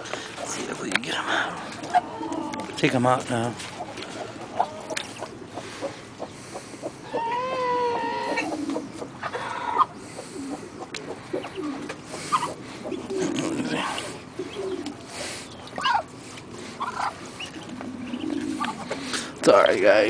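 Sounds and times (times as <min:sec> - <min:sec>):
duck and ducklings calling: 0:00.0 - 0:20.0.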